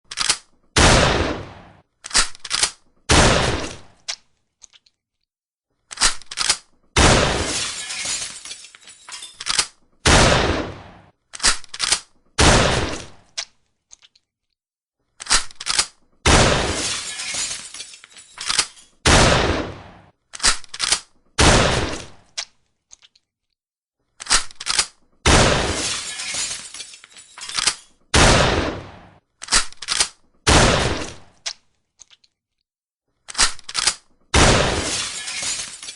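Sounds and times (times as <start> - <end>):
shotgun blasts: 0.8 - 1.8, 3.1 - 3.9, 7.0 - 7.5, 10.0 - 11.1, 12.4 - 13.2, 16.3 - 16.9, 19.0 - 20.1, 21.4 - 22.2, 25.3 - 25.9, 28.1 - 29.2, 30.5 - 31.3, 34.3 - 35.4.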